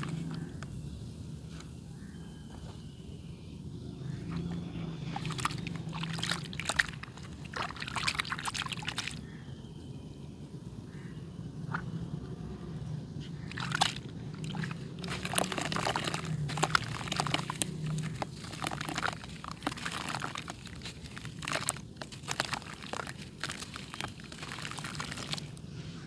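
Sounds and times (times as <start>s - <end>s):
clay crumbling and crunching: 13.5s - 25.6s.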